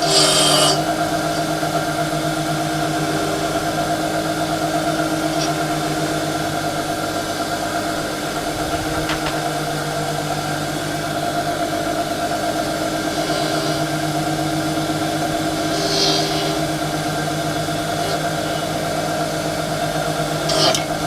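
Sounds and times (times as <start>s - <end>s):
motor humming: 0.0s - 21.0s.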